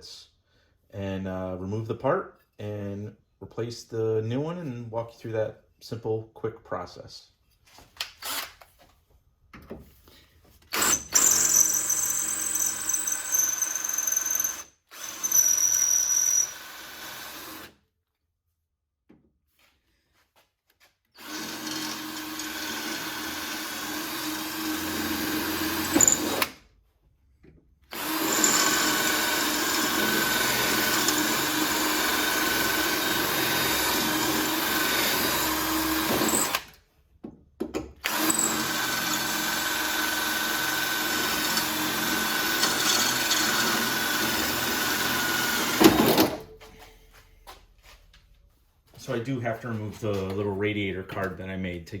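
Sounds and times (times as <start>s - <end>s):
power drill drilling rivets: 8.0s - 8.7s, 10.6s - 17.8s, 21.1s - 26.6s, 27.9s - 36.8s, 37.8s - 46.5s.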